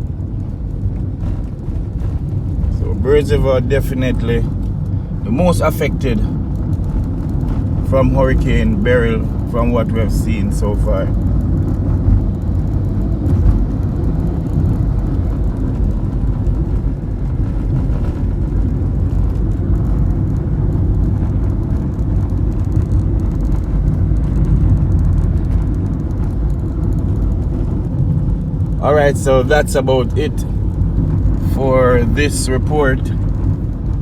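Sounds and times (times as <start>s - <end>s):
car engine and tyres rumbling: 0.0s - 34.0s.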